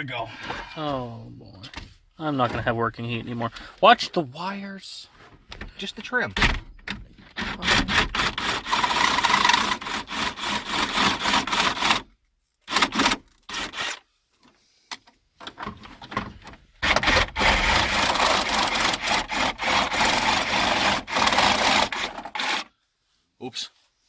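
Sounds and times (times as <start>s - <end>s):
saw cutting plastic: 7.3s - 12.1s, 12.7s - 14.0s, 16.8s - 22.7s.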